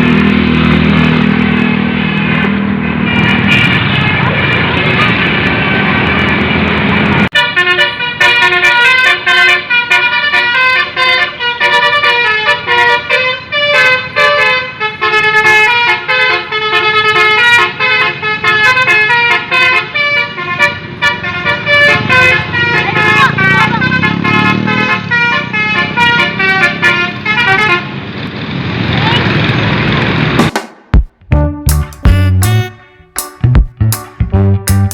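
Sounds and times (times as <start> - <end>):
noisy vehicle sound: 0.0 - 30.6
musical air horn melody: 7.3 - 27.8, 31.3 - 34.9.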